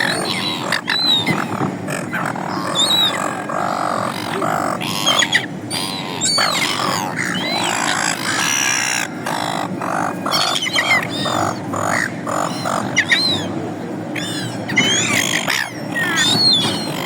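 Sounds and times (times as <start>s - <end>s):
gulls squawking: 0.0s - 17.0s.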